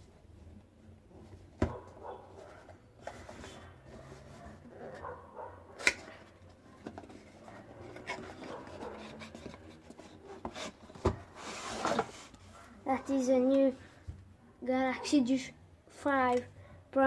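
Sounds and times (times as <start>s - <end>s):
cardboard rubbing and rustling: 6.7s - 12.5s.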